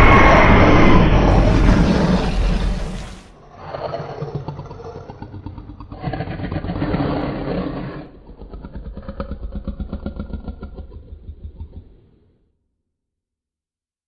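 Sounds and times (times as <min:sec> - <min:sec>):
pulsing rattling rumble: 0:00.0 - 0:03.7
creature growling: 0:01.2 - 0:12.3.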